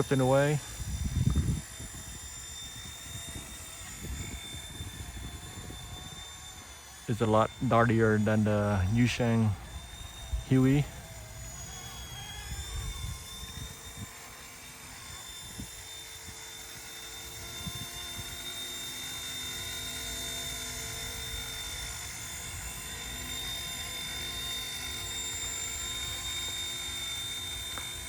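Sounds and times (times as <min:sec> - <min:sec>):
wind rumbling on microphone: 0:00.0 - 0:08.2, 0:08.8 - 0:14.4, 0:15.0 - 0:18.4
rc helicopter whine: 0:00.0 - 0:28.0.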